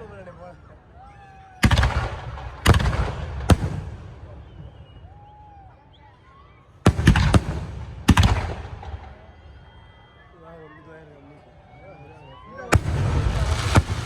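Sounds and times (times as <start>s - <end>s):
fireworks bursting with rumble: 1.6s - 5.0s, 6.9s - 9.2s, 12.7s - 14.0s.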